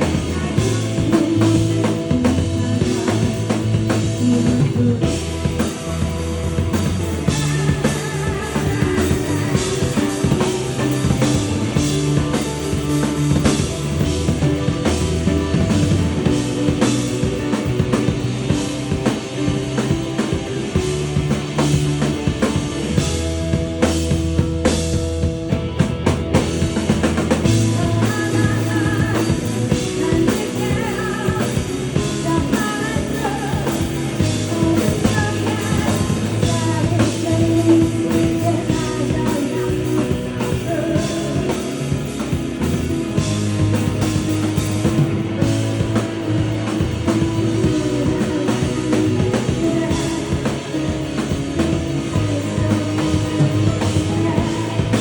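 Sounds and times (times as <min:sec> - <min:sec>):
person singing: 0:00.0 - 0:23.1, 0:27.2 - 0:55.0
live rock band playing: 0:00.0 - 0:55.0.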